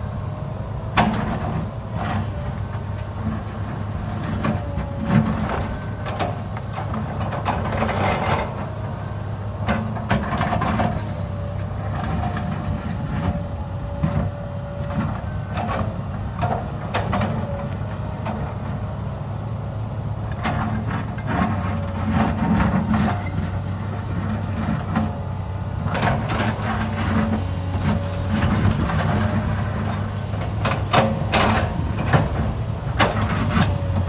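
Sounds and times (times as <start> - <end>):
diesel construction machinery running: 0.0 - 34.0
brief squeaks: 23.2 - 23.6.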